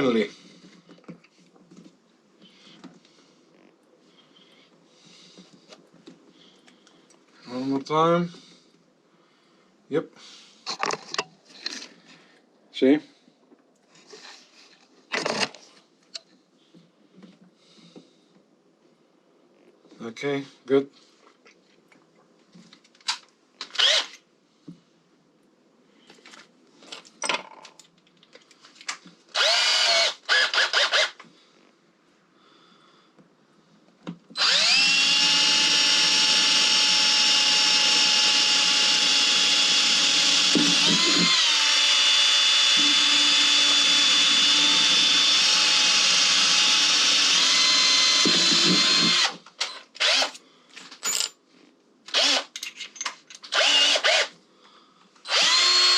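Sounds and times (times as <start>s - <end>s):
electric drill drilling: 23.8s - 24.1s, 29.4s - 31.2s, 34.4s - 50.4s, 52.1s - 52.5s, 53.5s - 54.3s, 55.3s - 55.9s.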